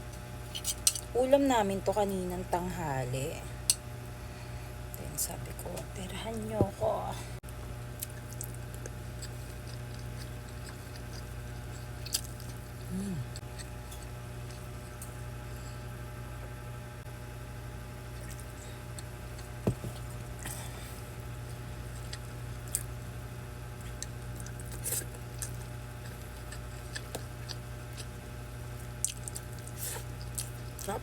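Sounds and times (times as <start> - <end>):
steady low hum: 0.0 - 31.0
close-up chewing: 7.8 - 15.3, 18.1 - 31.0.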